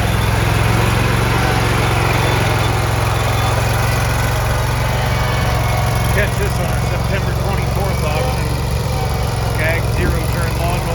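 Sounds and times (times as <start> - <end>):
mower engine running: 0.0 - 10.9.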